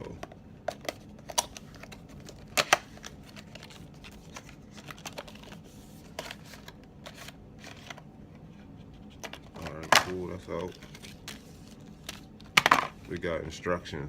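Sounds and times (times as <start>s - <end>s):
packaging clicks and scrapes: 0.7s - 8.0s, 8.9s - 12.6s.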